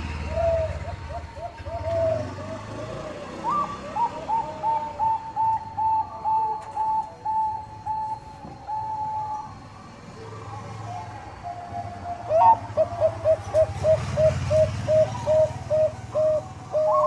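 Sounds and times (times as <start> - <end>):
dove cooing: 0.0 - 17.0.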